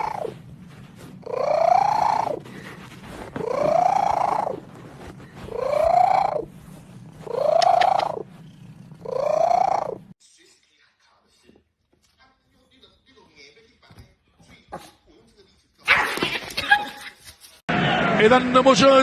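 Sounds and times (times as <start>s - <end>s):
cat meowing: 0.0s - 0.4s, 1.2s - 10.0s.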